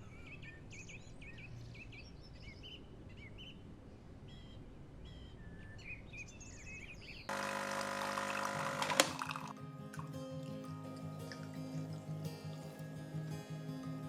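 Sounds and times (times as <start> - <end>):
small birds chirping: 0.0 - 7.3
soft music: 7.5 - 14.0.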